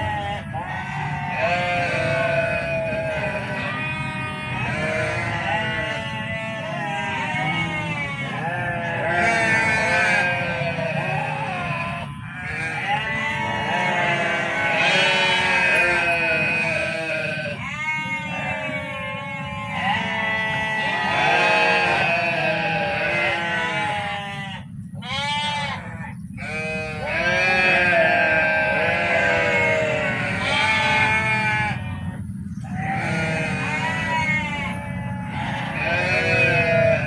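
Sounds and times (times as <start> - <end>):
farm animals bleating: 0.0 - 37.0.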